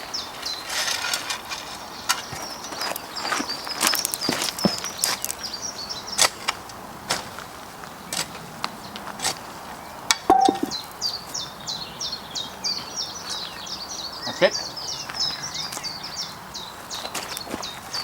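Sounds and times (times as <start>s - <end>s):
bird singing high falling notes: 10.3s - 10.8s.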